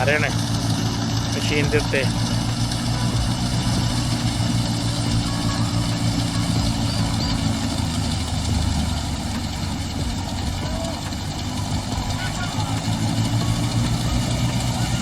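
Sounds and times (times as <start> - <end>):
thresher mechanical noise: 0.0 - 15.0
tractor engine running: 0.0 - 15.0.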